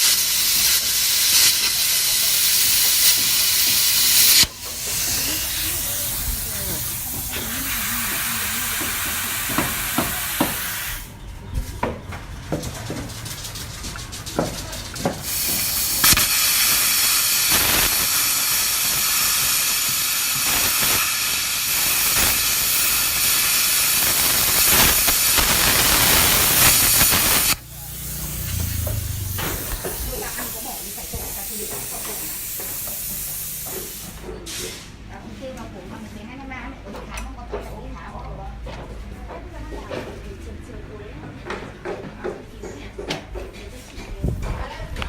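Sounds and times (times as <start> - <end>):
sharp crackles and clicks: 0.0 - 7.5, 13.2 - 33.2
plasma cutter hissing: 0.0 - 11.1, 15.1 - 34.9.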